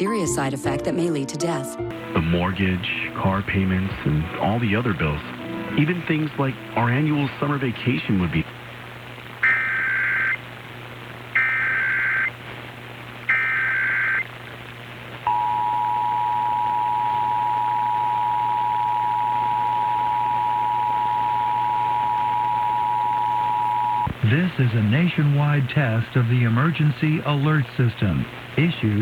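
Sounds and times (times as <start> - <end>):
screeching digital data bursts: 9.4 - 10.4, 11.4 - 12.4, 13.3 - 14.2.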